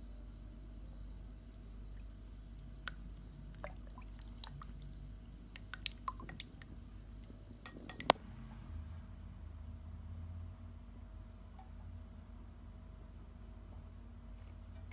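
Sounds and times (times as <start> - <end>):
small wet clicks and taps: 2.9 - 8.2.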